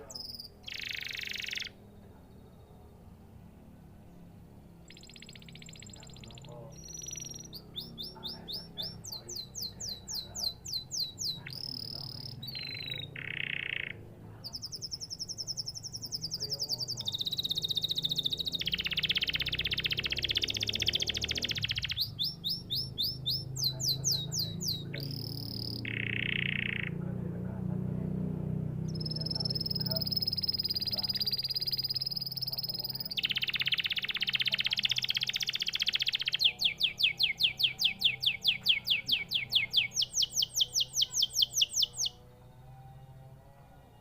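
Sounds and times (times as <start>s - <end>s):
canary singing trills: 0.0s - 27.2s, 27.8s - 44.0s.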